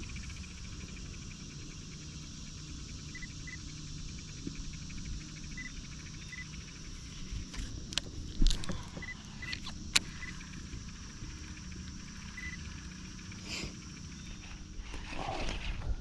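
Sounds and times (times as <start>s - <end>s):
insects trilling: 0.0s - 16.0s
sharp clicks: 7.5s - 12.6s.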